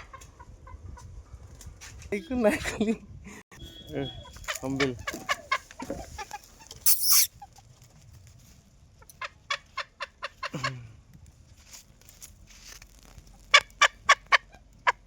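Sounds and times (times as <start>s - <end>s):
loud hiss: 6.9s - 7.3s.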